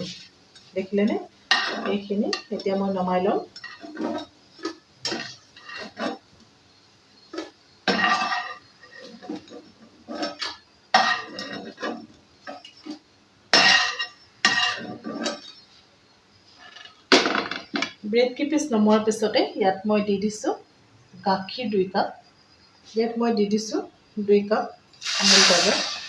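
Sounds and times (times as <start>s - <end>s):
metal utensil scraping frying pan: 0.0s - 6.3s, 7.3s - 15.7s.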